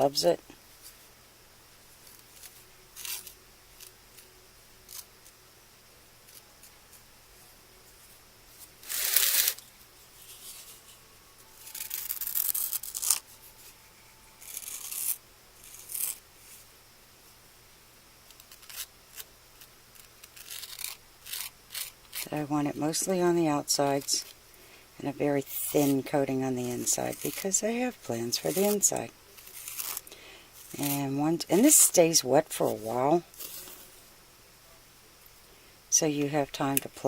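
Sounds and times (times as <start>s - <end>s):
wooden stick scraping gritty paste: 25.5s - 30.0s.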